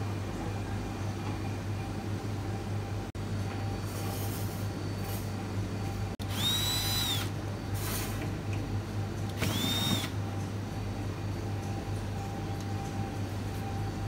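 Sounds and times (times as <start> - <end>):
steady low hum: 0.0 - 14.0
power drill whirring: 6.2 - 7.3, 9.3 - 10.2.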